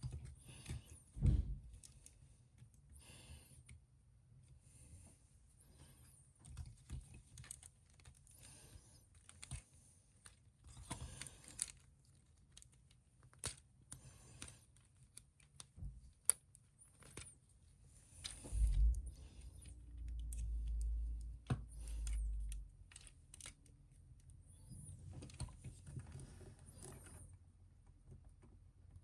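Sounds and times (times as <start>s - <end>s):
plastic parts rustling: 5.6s - 21.0s.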